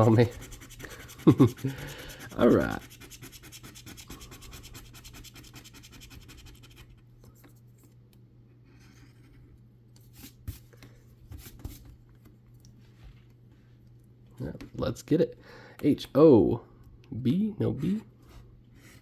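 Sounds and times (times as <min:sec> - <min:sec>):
metal scratching lottery ticket: 0:00.0 - 0:06.9.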